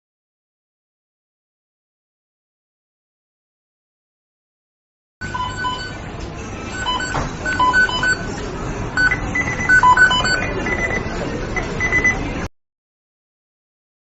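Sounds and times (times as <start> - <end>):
short electronic beeps: 5.2 - 6.0, 6.7 - 8.3, 9.0 - 12.2
steady background noise: 5.2 - 12.5.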